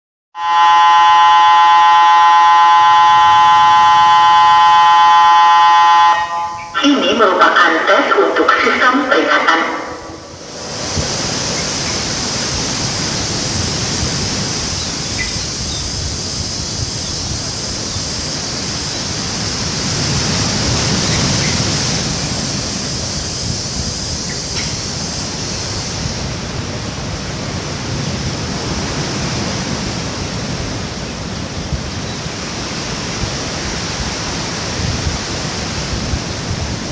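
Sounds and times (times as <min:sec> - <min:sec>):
high steady hiss: 0:02.5 - 0:36.9
waves breaking on a beach: 0:03.5 - 0:36.9
wind noise on microphone: 0:09.8 - 0:36.9.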